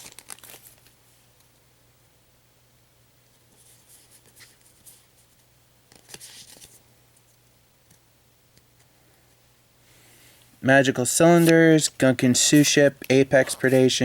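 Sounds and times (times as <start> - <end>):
faint steady hum: 0.0 - 14.0
trading cards rustling and clicking: 5.9 - 6.8, 11.0 - 14.0.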